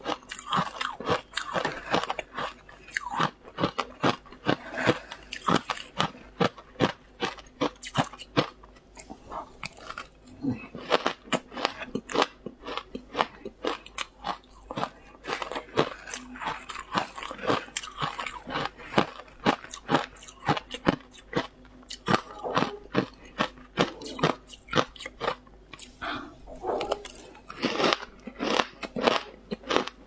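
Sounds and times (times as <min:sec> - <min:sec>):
ice crunching between teeth: 0:26.7 - 0:30.0.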